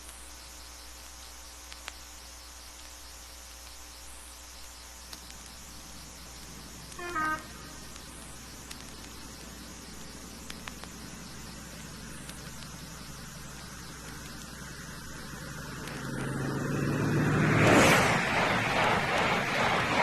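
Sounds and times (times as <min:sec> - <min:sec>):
faint background hiss: 0:00.0 - 0:16.3
vehicle passing by: 0:15.2 - 0:20.0.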